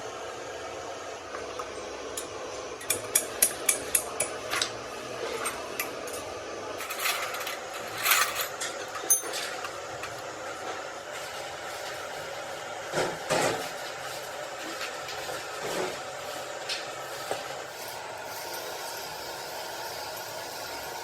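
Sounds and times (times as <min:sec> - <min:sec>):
workshop hum: 0:00.0 - 0:21.0
hammer tapping metal: 0:02.8 - 0:04.4.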